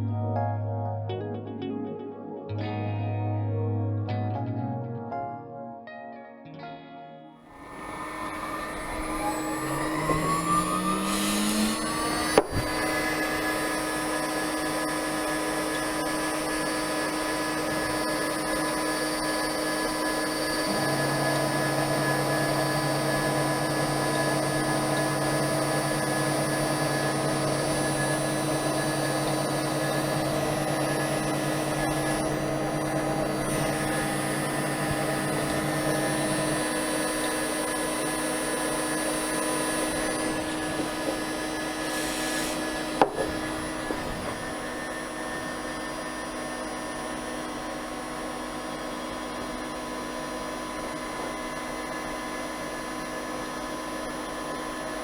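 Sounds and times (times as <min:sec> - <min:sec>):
low hum: 0:07.6 - 0:45.8
router spindle whining: 0:07.6 - 0:55.0
sharp knock: 0:43.0 - 0:44.1.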